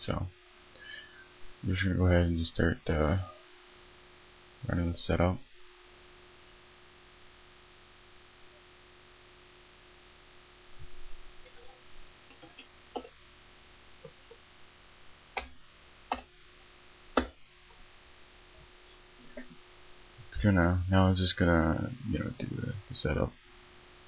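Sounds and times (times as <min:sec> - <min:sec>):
low electrical hum: 0:00.0 - 0:24.0.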